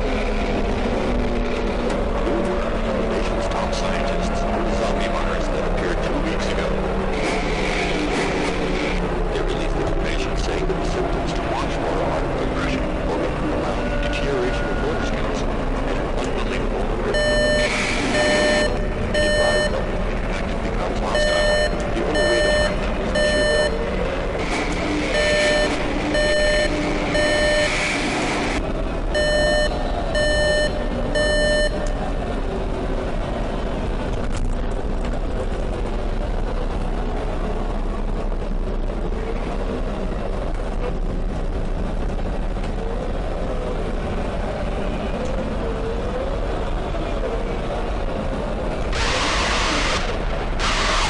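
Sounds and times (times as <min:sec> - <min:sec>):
city traffic: 0:00.0 - 0:51.0
short electronic beeps: 0:17.1 - 0:19.9, 0:21.1 - 0:23.9, 0:25.1 - 0:27.8, 0:29.2 - 0:32.0.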